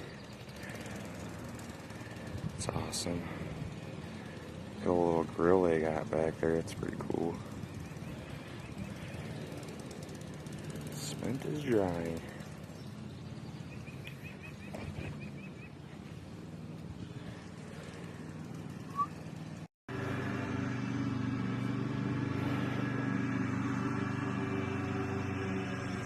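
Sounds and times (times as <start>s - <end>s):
high bird chirps: 18.8s - 19.2s.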